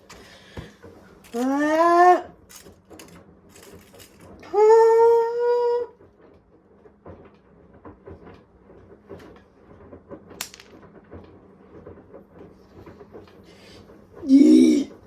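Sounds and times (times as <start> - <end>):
faint clatter: 0.0 - 5.0, 5.6 - 14.2
high drawn-out cry: 1.4 - 2.3, 14.2 - 15.0.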